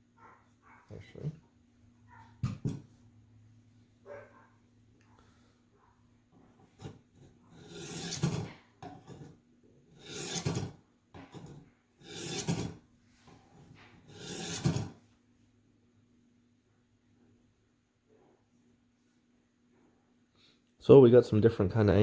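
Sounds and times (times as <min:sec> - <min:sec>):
knife rasping on sharpener: 0:06.8 - 0:09.3, 0:09.9 - 0:12.8, 0:14.0 - 0:15.0.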